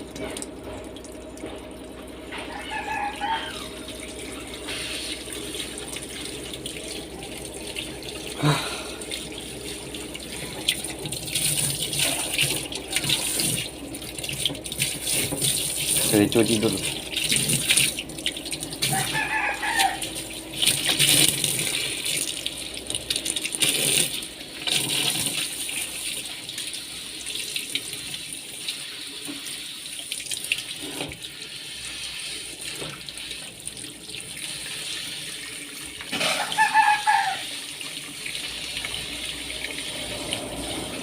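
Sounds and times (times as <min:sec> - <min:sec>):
tap water running and splashing: 0:00.0 - 0:41.0.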